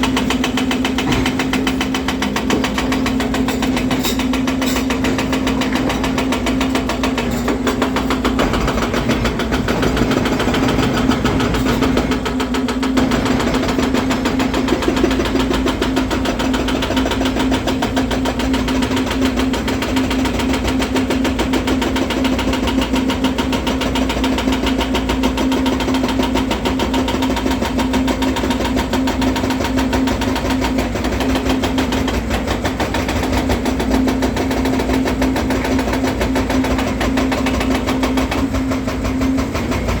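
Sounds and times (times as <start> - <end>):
excavator diesel engine droning: 28.2 - 40.0.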